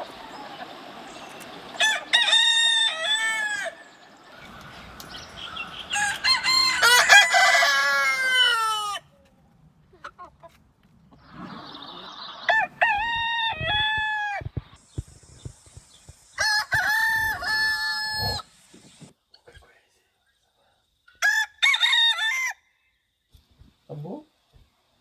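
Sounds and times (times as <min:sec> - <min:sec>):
roosters crowing: 0:00.0 - 0:09.1, 0:11.3 - 0:19.1, 0:21.2 - 0:22.6.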